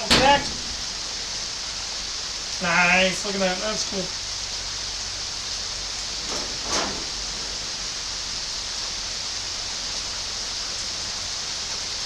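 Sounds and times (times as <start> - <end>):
heavy rain hissing: 0.0 - 12.0
brief rustle or scrape: 6.2 - 7.7.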